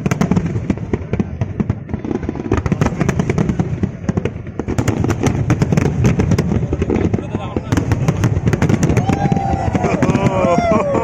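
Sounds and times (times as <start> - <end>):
fireworks sharp bangs: 0.0 - 11.0.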